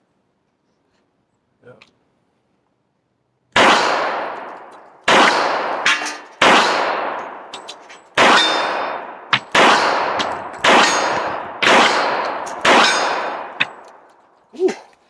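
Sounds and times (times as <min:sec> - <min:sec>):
pistol shots echoing: 0:03.5 - 0:14.1.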